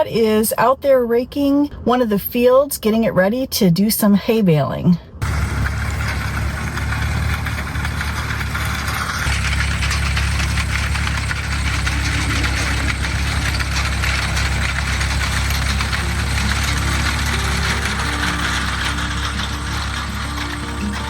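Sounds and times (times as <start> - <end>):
engine low rumble: 5.2 - 21.0.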